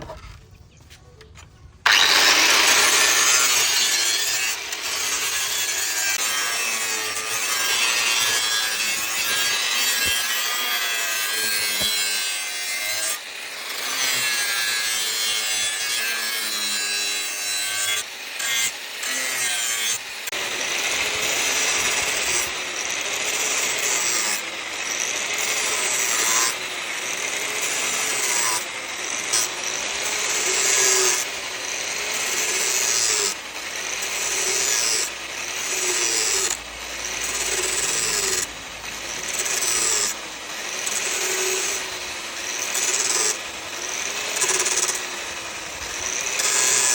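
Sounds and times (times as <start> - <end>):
tool scraping and sawing: 0.0 - 46.9.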